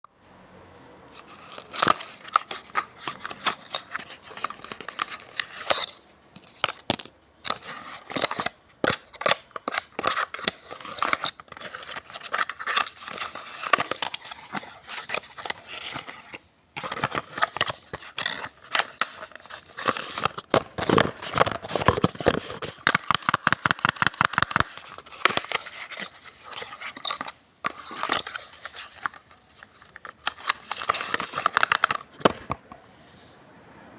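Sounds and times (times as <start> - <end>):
cardboard carton crackling and tearing: 7.6 - 29.1.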